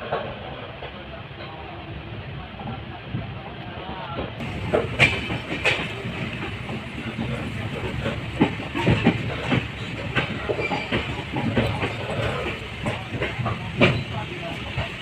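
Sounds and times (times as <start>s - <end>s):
train rumbling on track: 0.0s - 15.0s
wheels clacking over rails: 4.4s - 15.0s.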